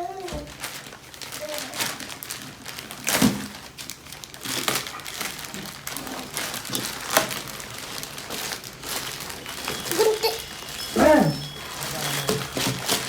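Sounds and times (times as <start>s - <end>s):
packaging crinkling: 0.0s - 13.0s.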